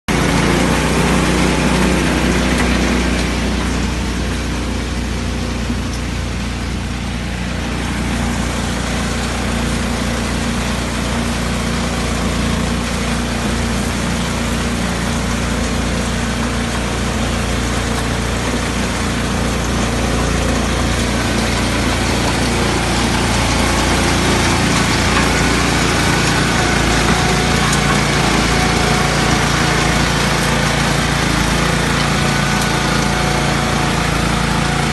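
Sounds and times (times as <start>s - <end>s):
small engine running: 0.1s - 34.9s.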